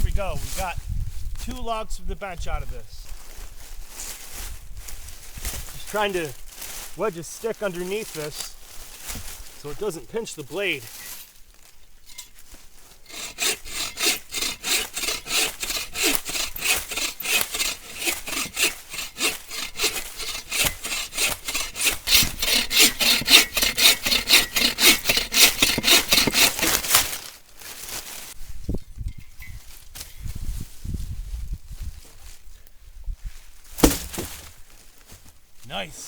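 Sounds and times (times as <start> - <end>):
hand saw cutting through log: 12.9 - 27.3, 33.8 - 34.4.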